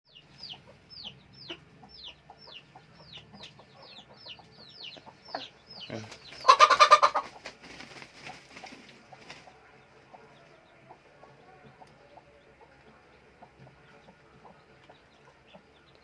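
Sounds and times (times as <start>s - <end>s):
chicks peeping: 0.1s - 16.0s.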